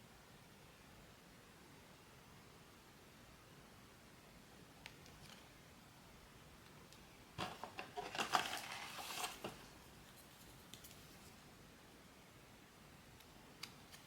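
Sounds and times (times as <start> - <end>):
packaging crinkling and rustling: 7.4 - 11.2.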